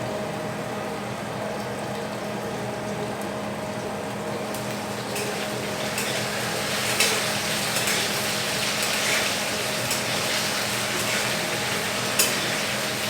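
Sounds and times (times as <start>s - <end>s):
potatoes sizzling in oil: 4.5s - 13.0s.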